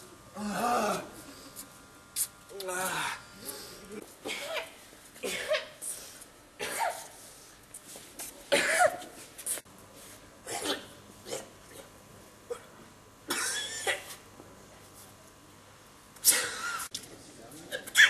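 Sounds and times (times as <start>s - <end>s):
person sneezing: 2.8s - 6.0s, 6.6s - 7.2s, 8.5s - 9.2s, 10.5s - 11.9s, 16.2s - 16.9s.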